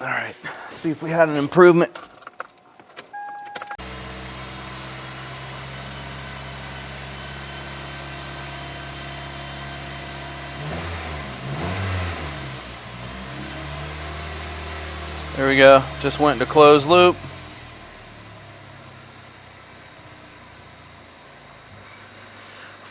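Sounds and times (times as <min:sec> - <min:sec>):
car engine starting and idling: 0:00.0 - 0:22.9
clicks: 0:01.9 - 0:03.8
short beep: 0:03.1 - 0:03.8.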